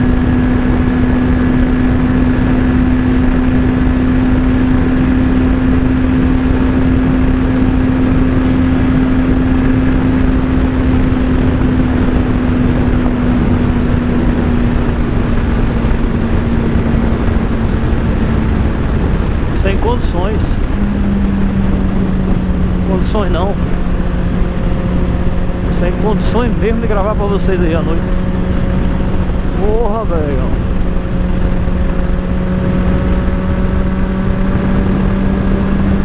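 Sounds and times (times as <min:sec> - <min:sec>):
motorcycle engine running: 0:00.0 - 0:36.0
loud even rushing noise: 0:05.8 - 0:36.0.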